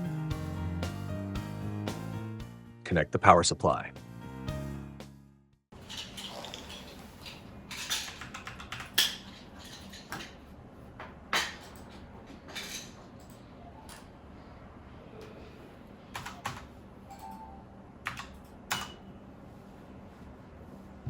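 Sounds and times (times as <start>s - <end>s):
clicks and knocks from desk equipment: 11.0s - 14.0s.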